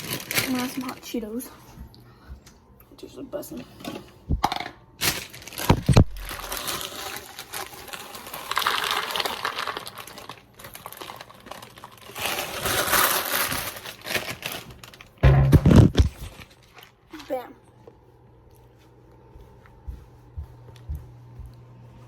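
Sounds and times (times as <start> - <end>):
snack bag crinkling: 0.0 - 1.0, 5.0 - 17.4.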